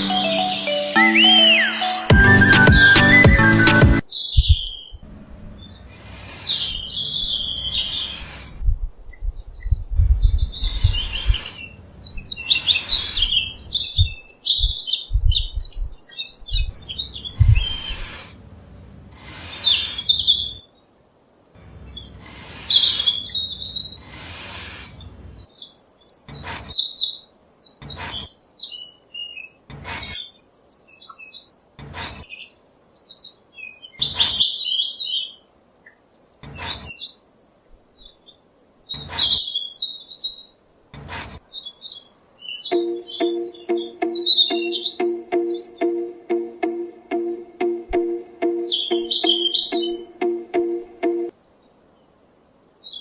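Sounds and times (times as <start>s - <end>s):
small birds chirping: 0.0s - 53.0s
short rasping scraping strokes: 5.9s - 8.6s, 10.6s - 13.8s, 17.4s - 18.4s, 19.2s - 20.4s, 22.1s - 25.3s, 26.3s - 26.8s, 27.8s - 28.3s, 29.7s - 30.2s, 31.8s - 32.3s, 34.0s - 34.5s, 36.4s - 37.0s, 38.9s - 39.4s, 41.0s - 41.4s.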